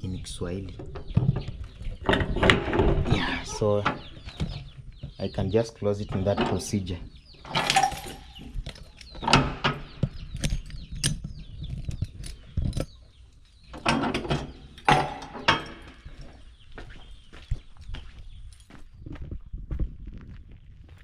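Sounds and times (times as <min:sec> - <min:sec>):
door lock metallic clicks and rattles: 0:07.4 - 0:11.2, 0:13.7 - 0:16.0.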